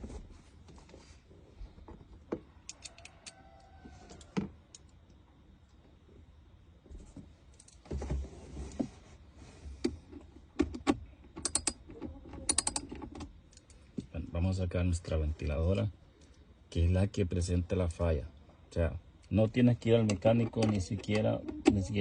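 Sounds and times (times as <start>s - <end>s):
hands and tools clicking and knocking: 9.8s - 14.1s, 20.0s - 21.9s.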